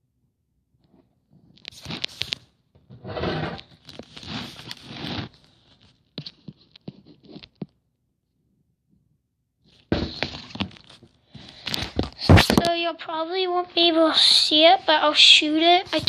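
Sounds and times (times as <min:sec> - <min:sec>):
rustling and scraping handling noise: 0:00.8 - 0:07.8, 0:09.7 - 0:12.8, 0:15.4 - 0:16.0.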